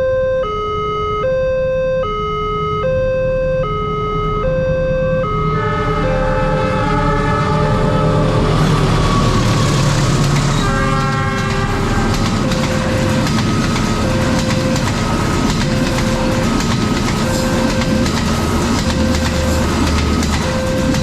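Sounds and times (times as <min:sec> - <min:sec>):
two-tone crossing warning siren: 0:00.0 - 0:21.0
train horn: 0:05.1 - 0:14.8, 0:20.3 - 0:21.0
train wheels clattering: 0:08.3 - 0:21.0.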